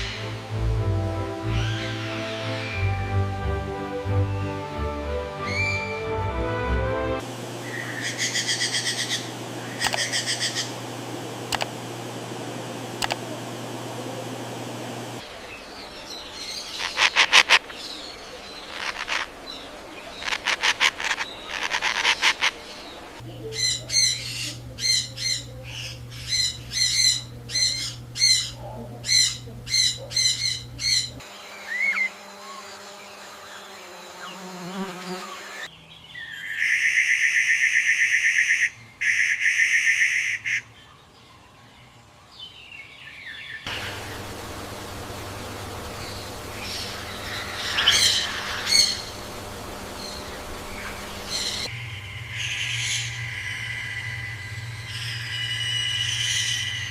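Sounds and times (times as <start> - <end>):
birds calling and chirping: 0.0 - 0.7, 1.4 - 3.3, 5.4 - 6.0, 7.2 - 56.9
low hum: 0.0 - 31.2, 43.7 - 56.9
buzzy sustained bird call: 1.4 - 3.3, 5.4 - 6.1, 7.4 - 11.6, 43.6 - 56.9.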